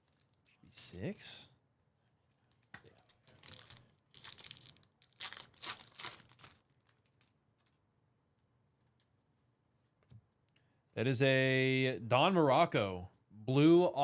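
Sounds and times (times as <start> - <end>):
wrapper tearing and crinkling: 3.0 - 7.3.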